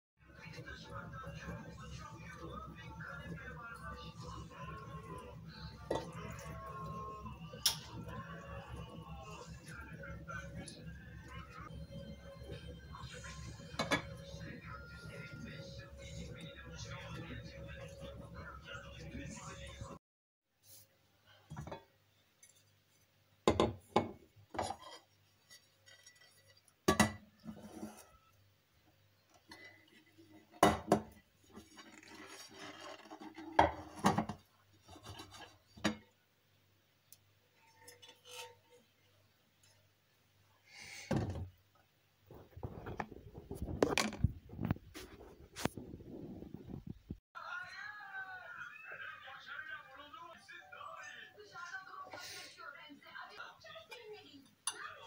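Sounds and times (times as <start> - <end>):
pots and dishes clinking: 5.0 - 15.3, 23.5 - 25.1, 25.8 - 28.0
rubbing or scraping: 27.4 - 28.2, 31.5 - 34.1, 34.8 - 35.7, 42.3 - 47.2.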